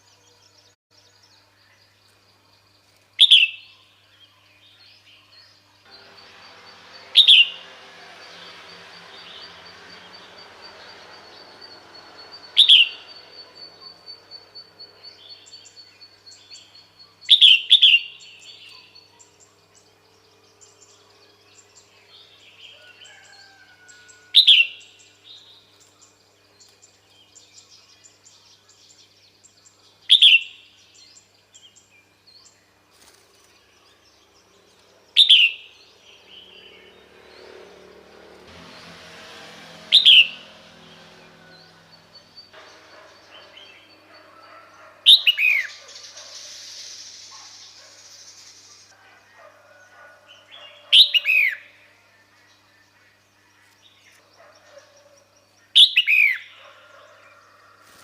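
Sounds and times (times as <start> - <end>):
faint bird chirping: 0.0 - 38.0, 39.9 - 58.0
bird downward-sweeping call: 5.9 - 16.7, 39.4 - 48.9.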